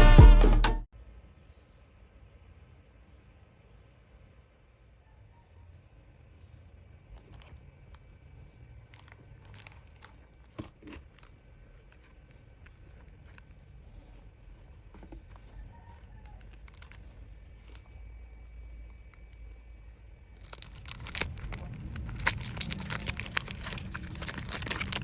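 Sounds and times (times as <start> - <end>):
toy packaging being opened: 8.9 - 14.1, 15.0 - 17.9, 20.4 - 25.0.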